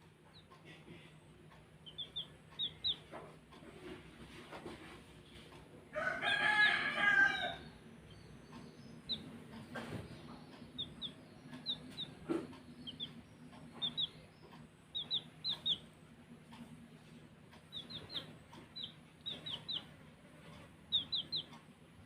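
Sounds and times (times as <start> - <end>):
baby chicks peeping: 0.0 - 22.0
rooster crowing: 5.9 - 7.8
faint knocks: 11.9 - 14.0.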